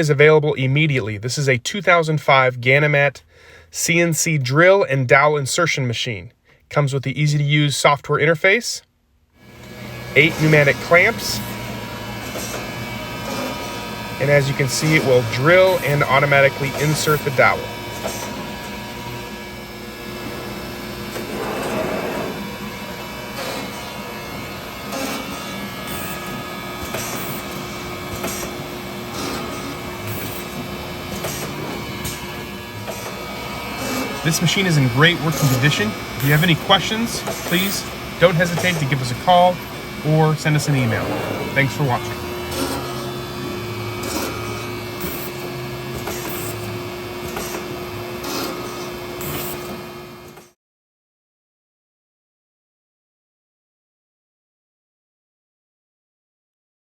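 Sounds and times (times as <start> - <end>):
machine motor hum: 9.4 - 50.5
pneumatic air hisses: 21.2 - 22.4.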